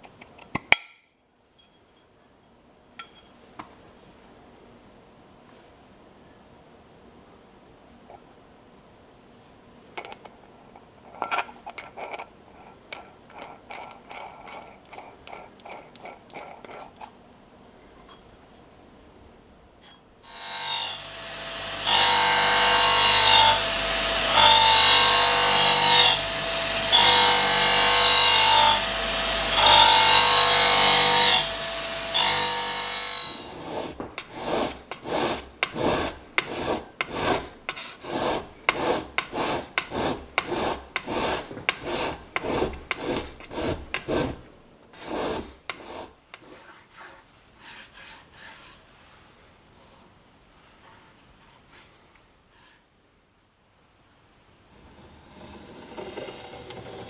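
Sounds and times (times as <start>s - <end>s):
surface grinder running: 20.3s - 37.4s.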